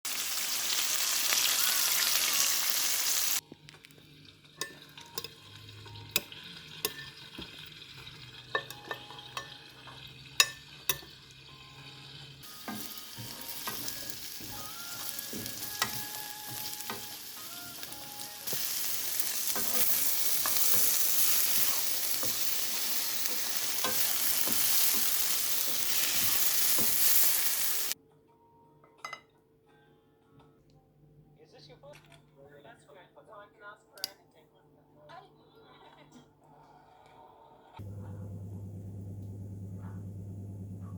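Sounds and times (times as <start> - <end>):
chicken sizzling in hot oil: 0.1 - 3.4, 4.1 - 28.0
utensil clinking against pan: 4.6 - 5.5, 6.1 - 11.3, 19.2 - 27.1.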